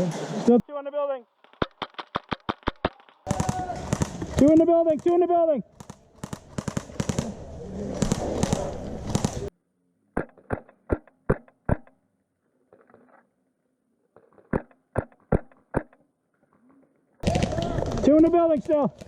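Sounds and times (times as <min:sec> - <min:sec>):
airsoft rifle shots: 0:01.5 - 0:07.4, 0:08.0 - 0:09.5
airsoft gunfire crackling: 0:01.5 - 0:09.5.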